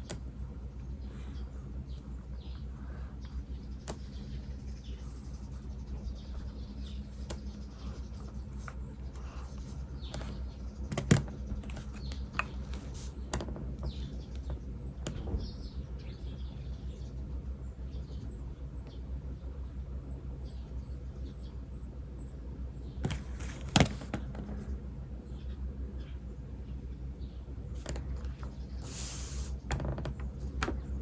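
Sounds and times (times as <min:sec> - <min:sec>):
pen scratching on paper: 0:00.0 - 0:02.2, 0:02.8 - 0:10.4
faint bird chirps: 0:00.0 - 0:11.0
steady low hum: 0:00.0 - 0:31.0.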